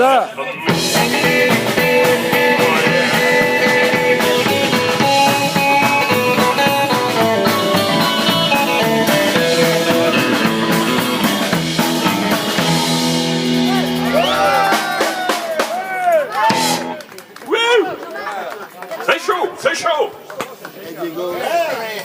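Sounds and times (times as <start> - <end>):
lead guitar: 0.0 - 15.5, 16.3 - 17.1
live rock band playing: 0.0 - 17.2.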